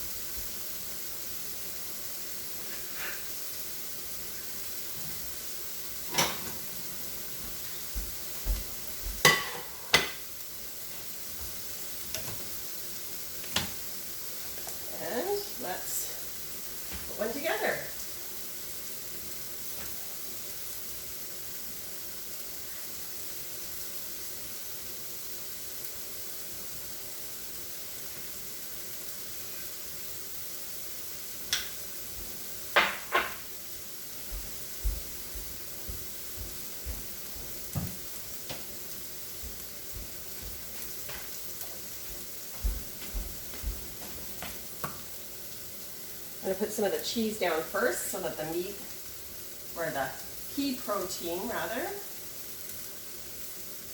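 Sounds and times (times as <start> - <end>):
food sizzling in a pan: 0.0 - 53.9
utensil clinking against pan: 9.2 - 10.1.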